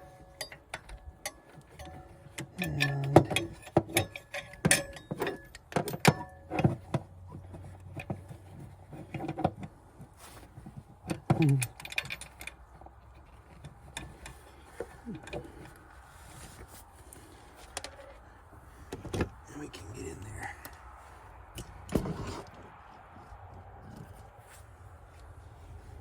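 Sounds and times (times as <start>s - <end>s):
metal hand tools clinking: 0.0s - 6.4s.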